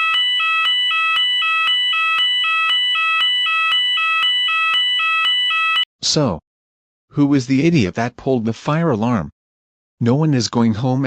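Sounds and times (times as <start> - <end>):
two-tone fire alarm: 0.0 - 5.9.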